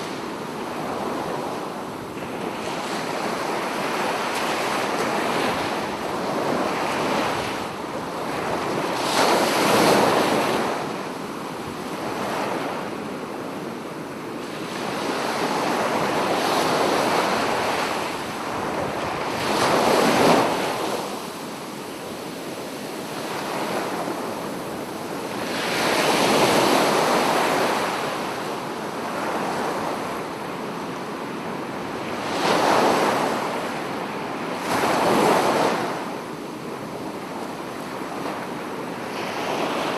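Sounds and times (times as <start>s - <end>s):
sea waves breaking: 14.7s - 30.6s.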